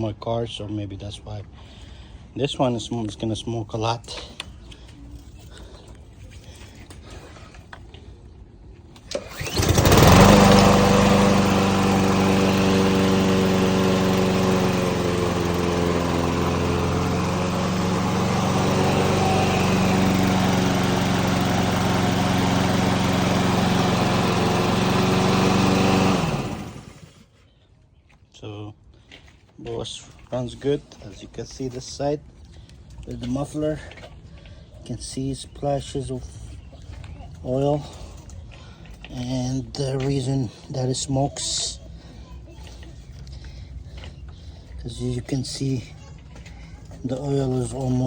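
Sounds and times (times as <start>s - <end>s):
push mower engine pull-started: 8.9s - 27.3s
mower engine running: 9.0s - 27.3s.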